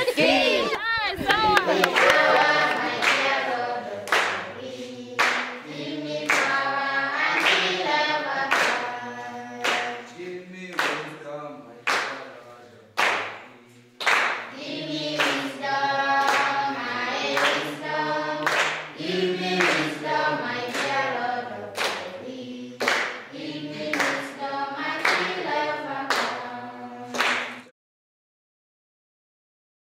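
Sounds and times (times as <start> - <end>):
hand claps on the beat: 1.3 - 3.4, 4.0 - 5.6, 6.2 - 7.8, 8.4 - 10.0, 10.7 - 11.2, 11.8 - 12.2, 13.0 - 16.6, 18.4 - 21.1, 21.8 - 22.2, 22.8 - 26.5, 27.1 - 27.7
group singing in chorus: 1.5 - 12.2, 13.7 - 27.7.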